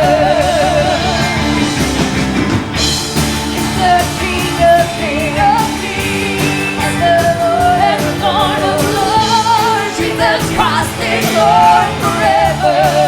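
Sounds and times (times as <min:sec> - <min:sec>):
person singing: 0:00.0 - 0:01.4, 0:03.7 - 0:13.0
band with steady drum beat: 0:00.0 - 0:13.0.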